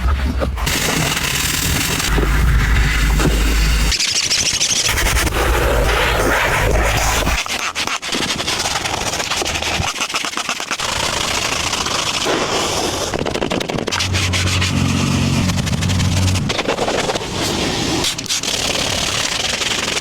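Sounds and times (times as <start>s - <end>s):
soapy scrubbing on car body: 0.6s - 4.0s
low machine hum: 0.7s - 3.9s, 14.0s - 16.8s.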